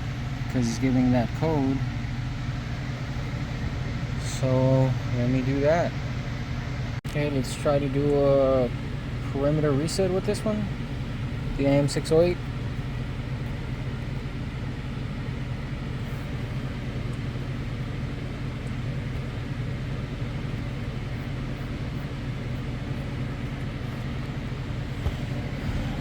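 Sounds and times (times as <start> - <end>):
low mechanical hum: 0.0 - 26.0.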